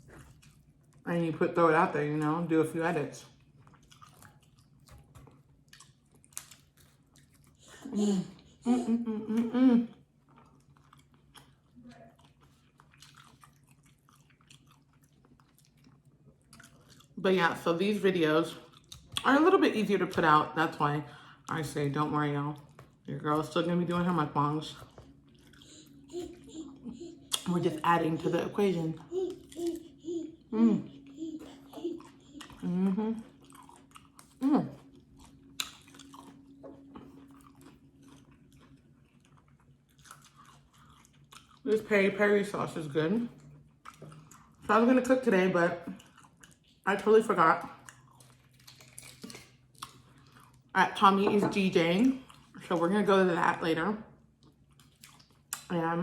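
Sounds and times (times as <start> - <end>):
chewing food: 0.0 - 1.1, 3.1 - 8.7, 9.3 - 17.2, 18.5 - 19.3, 22.5 - 41.9, 43.3 - 44.8, 45.8 - 50.7, 51.4 - 53.0, 54.3 - 55.7
faint steady hum: 0.0 - 56.0.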